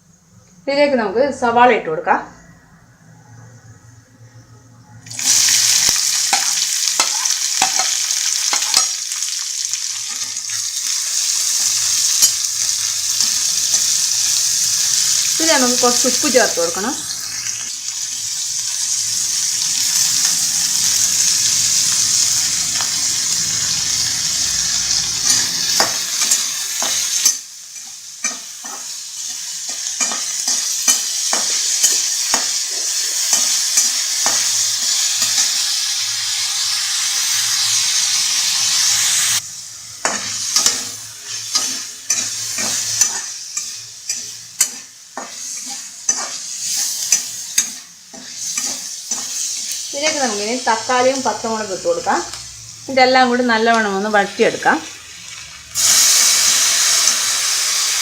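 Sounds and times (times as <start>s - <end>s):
onions sizzling in hot oil: 5.0s - 58.0s
spatula scraping a pan: 40.0s - 51.4s.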